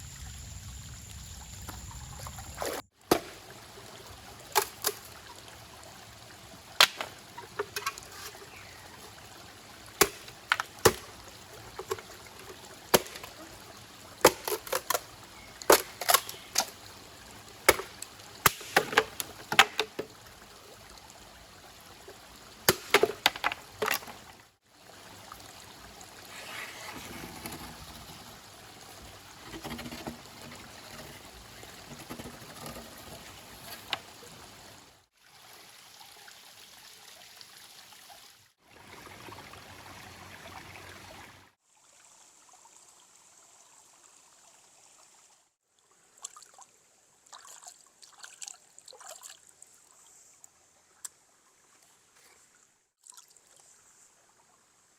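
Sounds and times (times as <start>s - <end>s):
running water: 0.0s - 42.1s.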